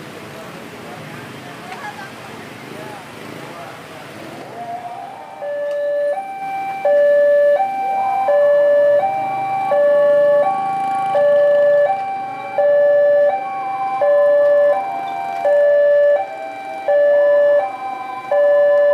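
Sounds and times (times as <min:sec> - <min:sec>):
two-tone level crossing alarm: 0:04.9 - 0:18.9.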